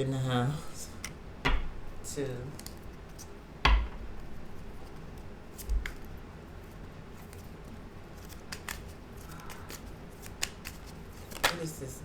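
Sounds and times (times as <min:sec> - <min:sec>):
cards handled on a table: 0:02.4 - 0:11.7.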